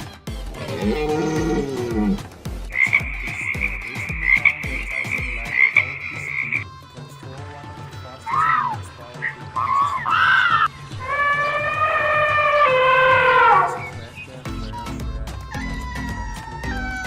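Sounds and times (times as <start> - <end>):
music with a steady beat: 0.0 - 8.2, 10.6 - 17.0
high animal trill: 0.4 - 6.6, 8.3 - 14.4
animal call rising and falling: 0.6 - 2.2, 8.3 - 14.1.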